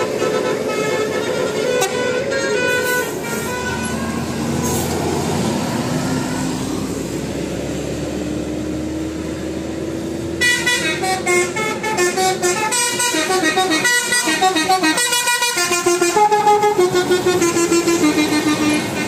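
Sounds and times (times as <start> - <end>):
bus horn playing a tune: 0.0 - 4.9, 10.3 - 19.0
bus engine running: 0.0 - 19.0.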